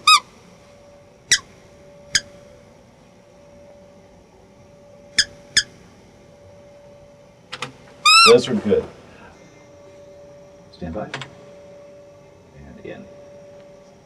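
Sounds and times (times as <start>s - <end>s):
faint steady hum: 0.0s - 14.0s
cartoon bird chirps: 8.1s - 8.3s.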